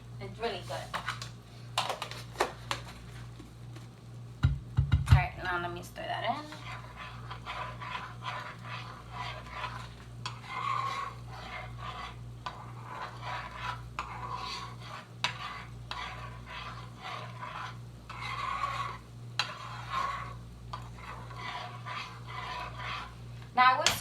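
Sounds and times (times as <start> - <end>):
steady low hum: 0.0 - 24.0
utensil scraping a pan: 6.2 - 24.0.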